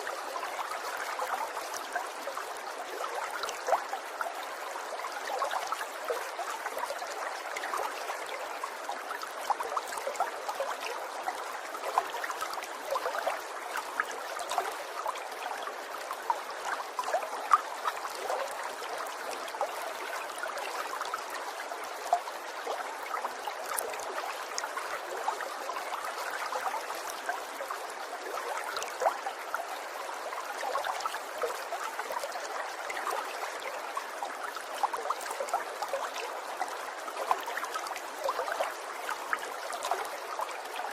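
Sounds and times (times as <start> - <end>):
water trickling and bubbling: 0.0 - 40.9.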